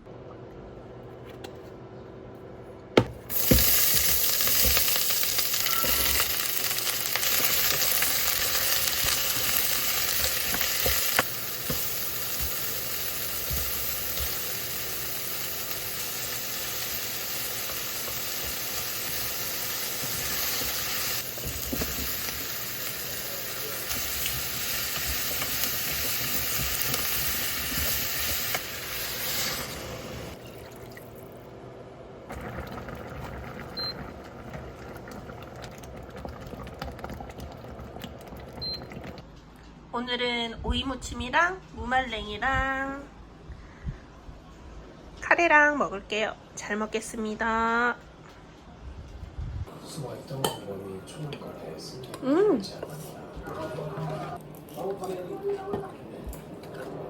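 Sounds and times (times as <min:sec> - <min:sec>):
food sizzling in a frying pan: 0:03.3 - 0:30.4.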